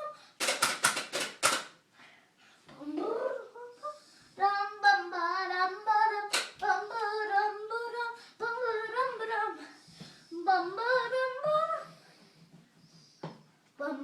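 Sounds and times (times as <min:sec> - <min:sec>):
child singing wordless notes: 0:02.7 - 0:12.1, 0:13.8 - 0:14.0.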